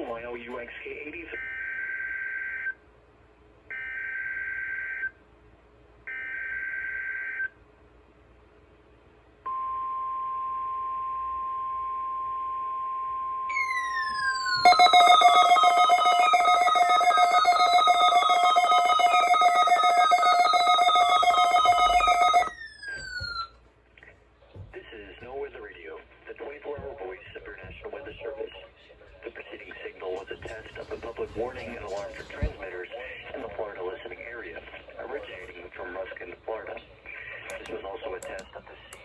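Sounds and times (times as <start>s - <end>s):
steady warning tone: 9.5s - 33.2s
buzzy alert with falling sweeps: 13.5s - 23.5s
data-burst screeches: 13.5s - 23.5s.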